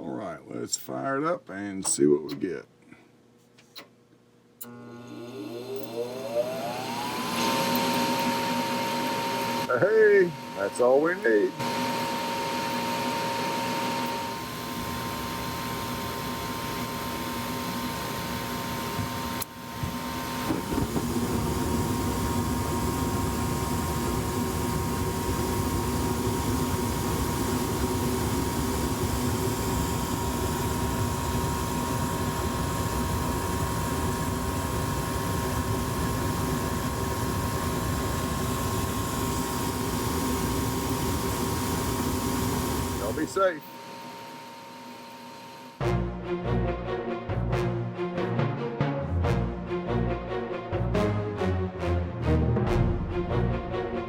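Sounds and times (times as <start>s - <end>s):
furnace motor hum: 4.6s - 45.8s
furnace running: 4.6s - 45.8s.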